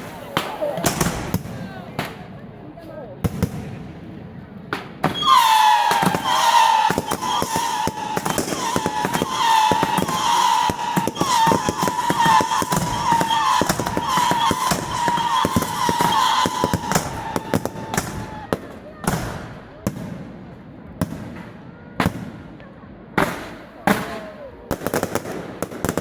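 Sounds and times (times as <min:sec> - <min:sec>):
firecrackers cracking and banging: 0:00.0 - 0:02.4, 0:04.6 - 0:26.0
shrill firework whistle: 0:05.1 - 0:18.6.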